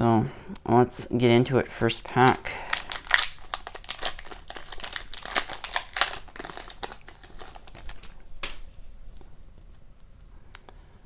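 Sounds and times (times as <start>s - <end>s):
wrapper crinkling torn open: 2.1s - 8.7s.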